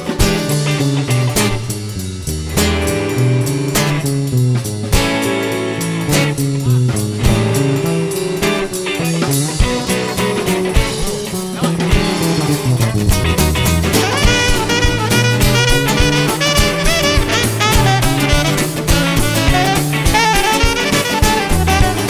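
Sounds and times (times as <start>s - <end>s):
instrumental pop-rock band: 0.0s - 22.0s
lead guitar: 0.0s - 22.0s.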